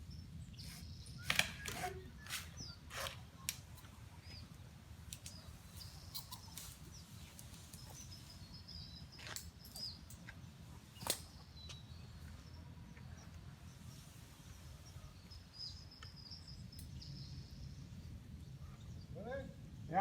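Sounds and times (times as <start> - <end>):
birds chirping faintly: 0.0 - 20.0
sharp clicks or knocks: 1.2 - 2.4.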